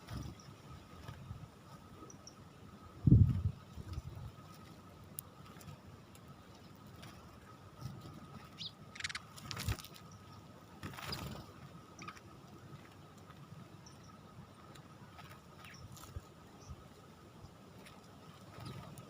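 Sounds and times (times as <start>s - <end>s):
wings fluttering: 0.0s - 2.0s, 3.1s - 13.5s, 14.6s - 17.0s, 17.7s - 19.0s
sparrows chirping: 6.4s - 12.2s, 15.0s - 19.0s.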